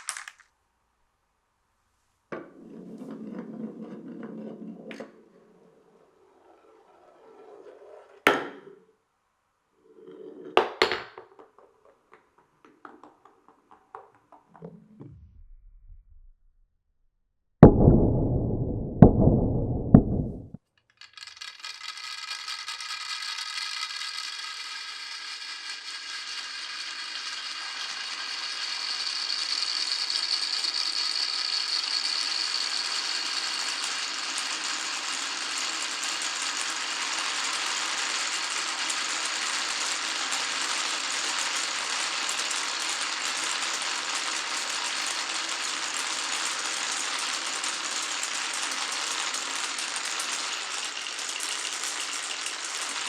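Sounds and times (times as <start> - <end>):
marbles rattling through track: 0.0 - 0.5, 10.0 - 14.8, 20.9 - 53.0
knocking sound: 8.3 - 8.8, 10.6 - 16.5, 17.6 - 20.6.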